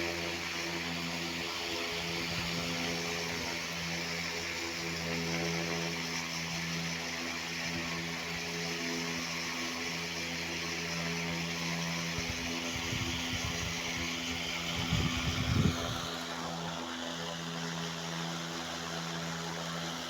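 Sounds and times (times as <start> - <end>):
motor running steadily: 0.0 - 20.0.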